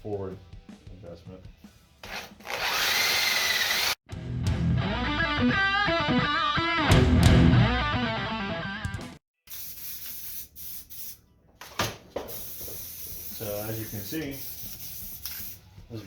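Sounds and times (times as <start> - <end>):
electric guitar music: 4.1 - 9.2.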